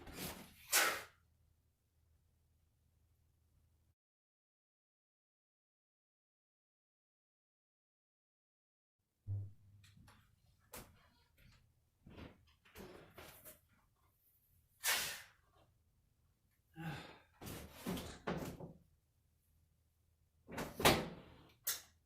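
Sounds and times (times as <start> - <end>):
person sneezing: 14.8 - 15.3.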